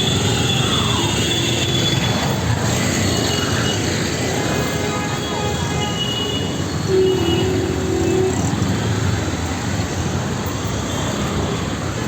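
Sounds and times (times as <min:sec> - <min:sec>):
street traffic noise: 0:00.0 - 0:12.0
vehicle horn: 0:04.8 - 0:08.5.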